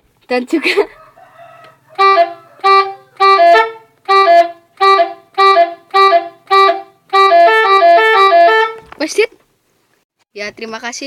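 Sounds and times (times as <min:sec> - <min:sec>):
truck air horn chord blasts: 0:01.9 - 0:08.8.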